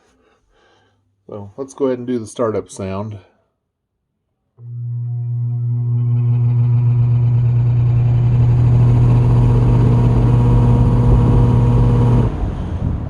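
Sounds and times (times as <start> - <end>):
box fan motor hum: 4.6 - 13.0.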